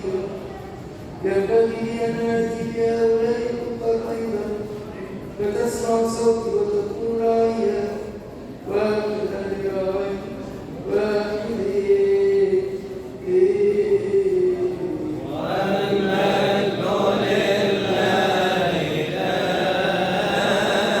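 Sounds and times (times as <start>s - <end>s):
choir chanting: 15.3s - 21.0s.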